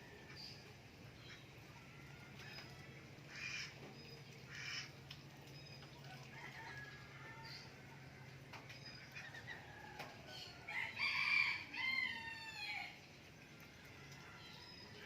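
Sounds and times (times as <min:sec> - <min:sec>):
rooster crowing: 0:10.0 - 0:13.0.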